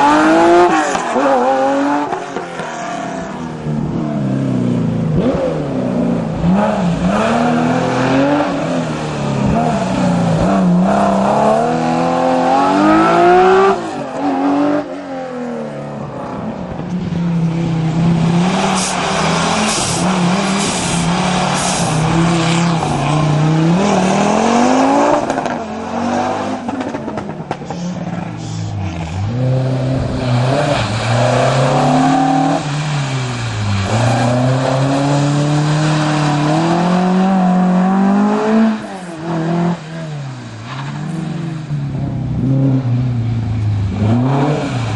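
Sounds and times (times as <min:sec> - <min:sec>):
rally car engine revving: 0:00.0 - 0:44.9.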